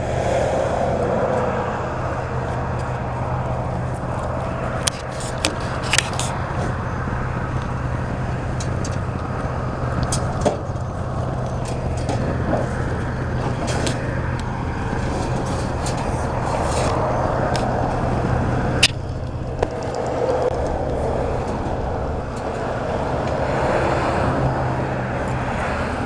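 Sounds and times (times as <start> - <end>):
vehicle engine running: 0.0 - 26.0
sharp clicks and rattles: 4.2 - 6.7, 8.5 - 23.4.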